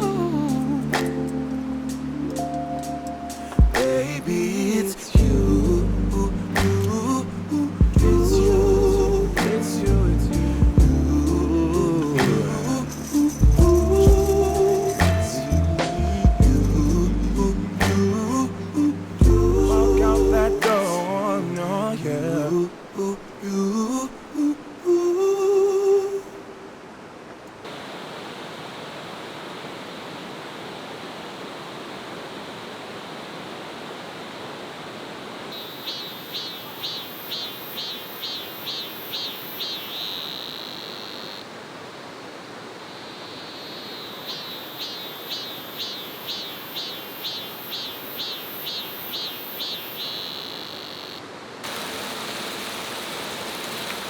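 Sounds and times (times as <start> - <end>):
pop song: 0.0 - 2.6, 3.2 - 26.3
stream running: 0.0 - 54.0
insect calling with buzz: 10.3 - 18.0, 27.8 - 54.0.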